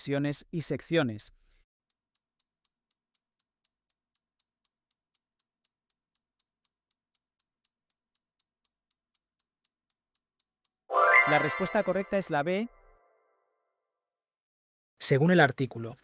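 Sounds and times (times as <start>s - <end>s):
clock ticking: 1.9s - 10.9s.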